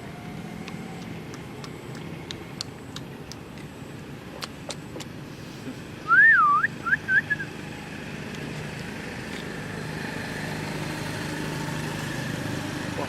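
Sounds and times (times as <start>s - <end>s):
vehicle engine hum: 0.0s - 13.0s
warbling whistle: 6.1s - 7.5s.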